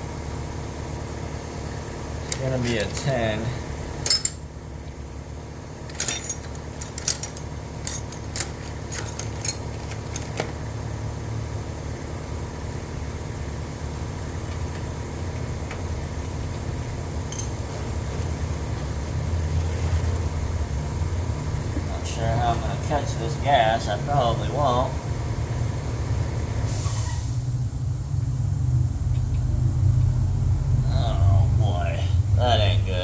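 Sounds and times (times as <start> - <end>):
steady low hum: 0.0 - 26.7, 27.3 - 33.0
wrench clicking and clinking: 4.0 - 4.4, 5.9 - 10.5, 17.3 - 17.6.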